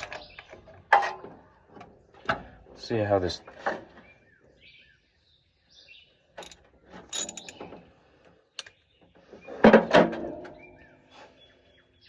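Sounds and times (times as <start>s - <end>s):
socket wrench clicking metal: 6.4s - 7.6s.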